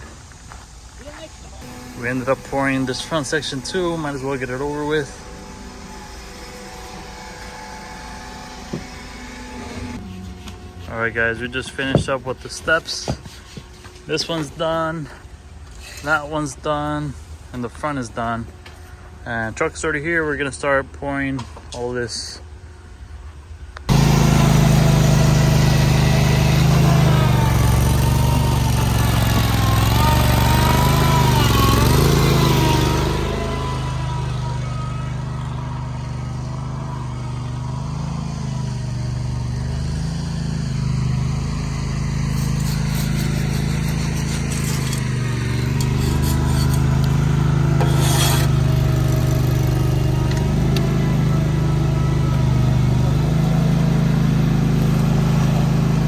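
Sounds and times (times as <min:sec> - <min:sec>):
truck diesel engine running: 0:01.6 - 0:15.7, 0:23.8 - 0:56.0
wavering whine: 0:01.6 - 0:16.0, 0:26.6 - 0:53.6.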